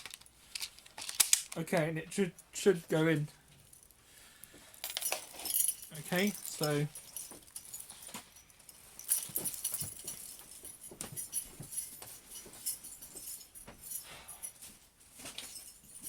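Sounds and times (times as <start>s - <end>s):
airsoft gun clicks and rattles: 0.0s - 1.9s.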